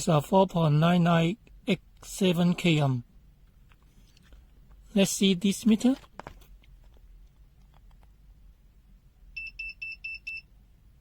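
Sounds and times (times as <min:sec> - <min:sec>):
multimeter high-pitched beeps: 0:09.4 - 0:10.5.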